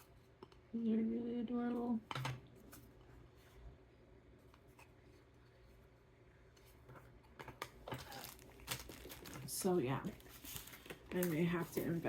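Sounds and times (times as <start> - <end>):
packaging ticks and rubs: 8.0 - 12.0.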